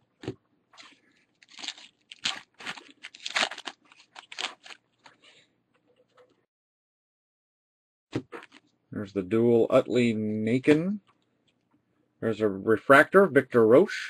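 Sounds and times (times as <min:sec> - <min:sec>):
trading cards rustling: 0:00.8 - 0:05.3.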